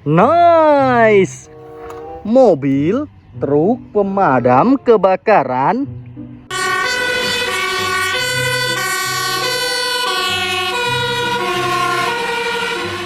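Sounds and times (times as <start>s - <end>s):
toy fire truck electronic siren: 6.5s - 13.0s.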